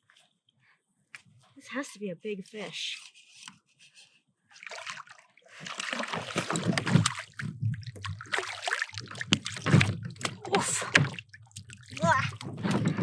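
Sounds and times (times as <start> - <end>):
fish splashing in water: 4.6 - 13.0.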